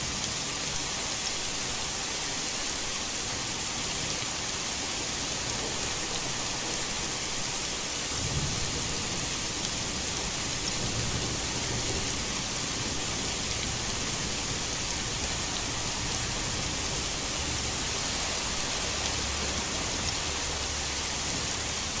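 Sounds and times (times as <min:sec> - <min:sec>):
heavy rain pouring: 0:00.0 - 0:22.0.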